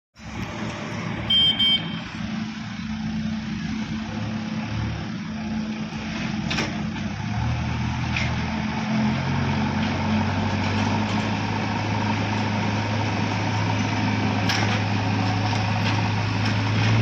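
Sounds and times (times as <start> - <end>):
diesel engine running: 0.2 - 17.0
short beeps: 1.3 - 2.2.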